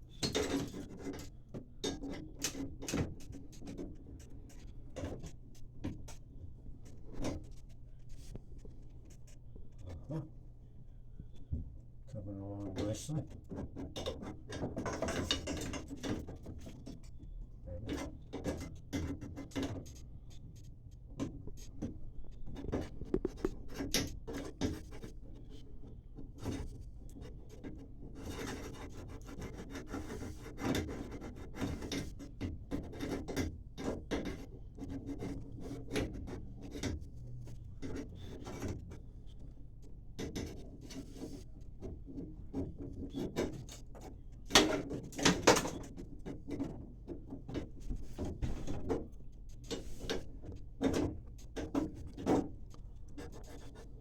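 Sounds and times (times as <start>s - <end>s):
tool scraping copper pipe: 21.2s - 39.0s, 40.2s - 52.6s.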